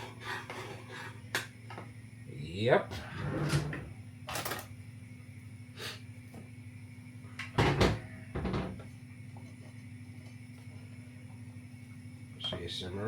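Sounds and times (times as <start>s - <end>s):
steady low hum: 0.0s - 13.0s
kitchen knocks and bumps: 7.6s - 8.8s.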